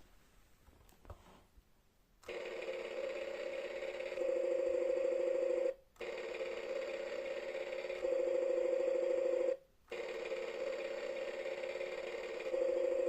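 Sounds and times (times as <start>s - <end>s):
toy jackhammer buzzing rattle: 2.2s - 4.4s, 6.0s - 8.4s, 9.9s - 13.0s.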